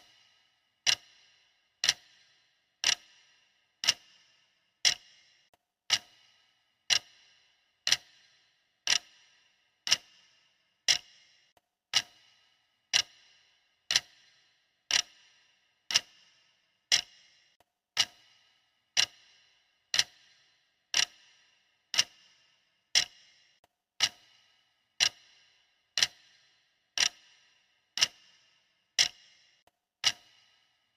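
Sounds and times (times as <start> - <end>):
stopwatch ticking: 0.0 - 30.9.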